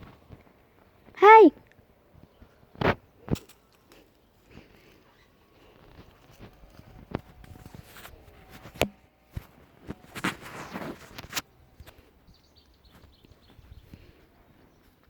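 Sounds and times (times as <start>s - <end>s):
footsteps and scuffing: 5.7s - 15.0s.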